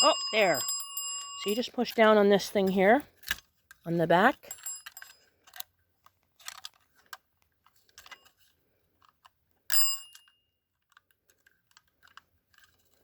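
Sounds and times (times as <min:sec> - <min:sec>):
alarm bell ringing: 0:00.0 - 0:02.1.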